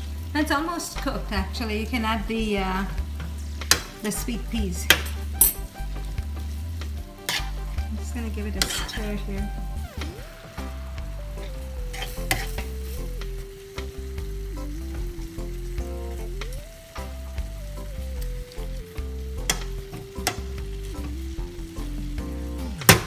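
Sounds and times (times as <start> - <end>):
meat sizzling in a pan: 0.0 - 23.0
soft background music: 0.0 - 23.0
spoon scraping a pan: 7.2 - 7.6, 11.9 - 13.0.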